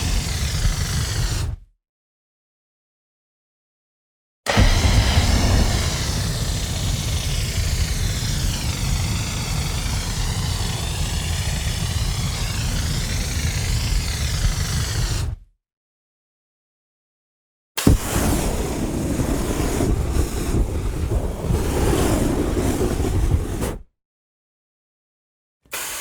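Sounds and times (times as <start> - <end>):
large fire roaring: 4.5 - 15.2, 17.9 - 23.8.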